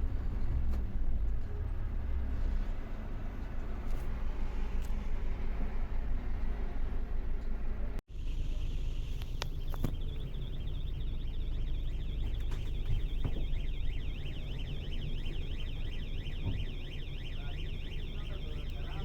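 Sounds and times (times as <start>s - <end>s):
bus engine rumbling: 0.0s - 19.0s
electronic warning alarm: 8.1s - 19.0s.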